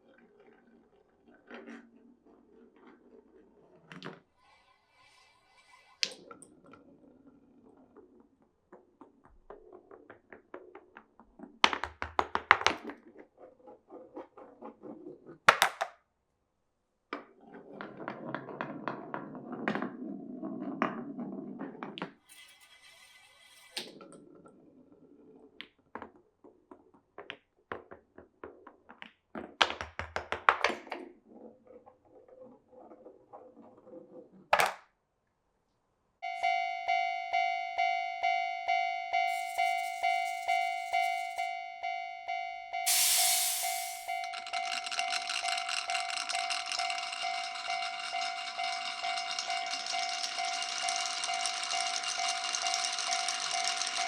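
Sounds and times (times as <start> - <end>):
marbles rolling down wooden run: 1.3 - 15.9, 17.4 - 34.8, 39.3 - 41.4, 42.9 - 54.0
high ringing tone: 36.2 - 54.0.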